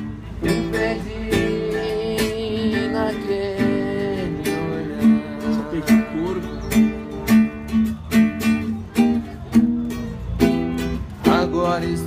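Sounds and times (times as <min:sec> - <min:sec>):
acoustic guitar strumming: 0:00.0 - 0:12.0.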